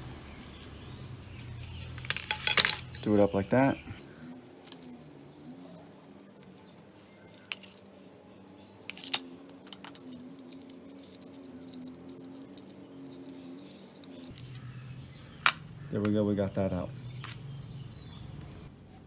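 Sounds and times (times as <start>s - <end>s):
metal tools clicking: 1.3s - 3.0s, 4.6s - 8.0s, 8.8s - 14.5s.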